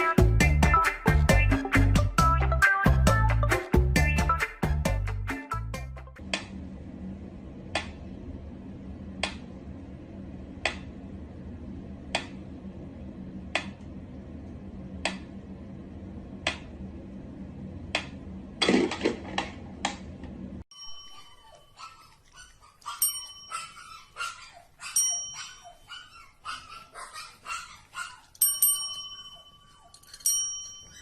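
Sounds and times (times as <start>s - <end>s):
low hum: 6.2s - 21.8s.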